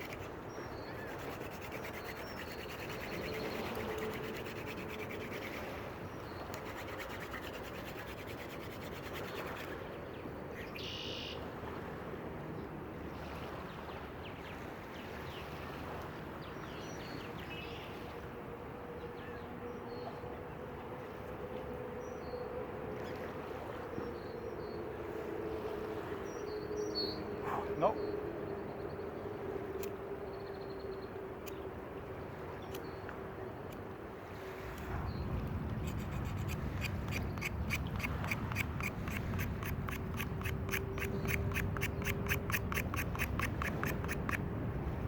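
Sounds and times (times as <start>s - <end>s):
wood rubbing on wood: 0.0s - 0.3s, 1.0s - 5.7s, 6.5s - 9.8s, 35.6s - 44.4s.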